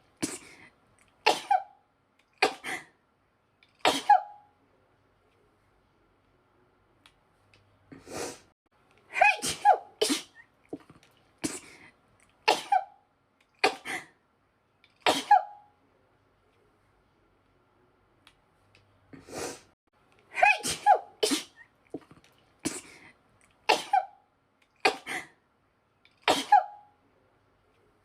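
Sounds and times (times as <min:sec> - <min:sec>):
woman sneezing: 0:03.8 - 0:04.4, 0:09.2 - 0:10.4, 0:12.5 - 0:12.9, 0:15.0 - 0:15.6, 0:20.4 - 0:21.6, 0:23.7 - 0:24.2, 0:26.3 - 0:26.8.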